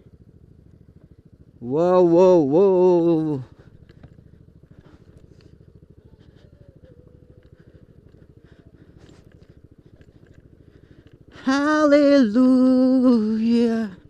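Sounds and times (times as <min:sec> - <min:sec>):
scooter engine putter: 0:00.0 - 0:14.0
man's drawn-out sung call: 0:01.6 - 0:03.6, 0:11.3 - 0:14.0.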